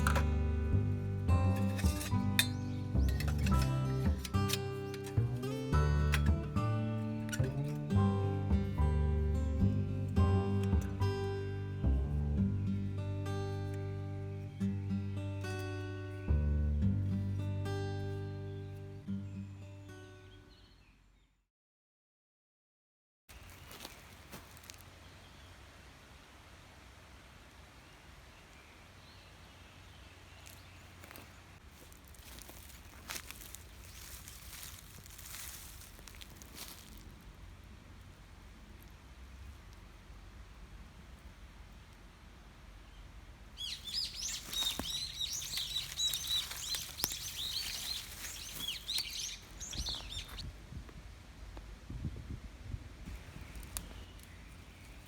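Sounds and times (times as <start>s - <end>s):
small birds chirping: 1.3s - 5.7s, 27.8s - 37.1s, 42.8s - 50.5s, 53.1s - 55.0s
low rumble and hiss: 31.4s - 44.6s, 49.3s - 55.0s
faint bird chirps: 43.6s - 50.4s.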